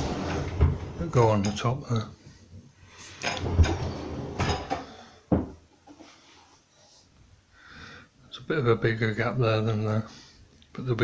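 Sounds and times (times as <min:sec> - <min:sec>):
cabinet door and hinge clunks: 0:03.2 - 0:05.6.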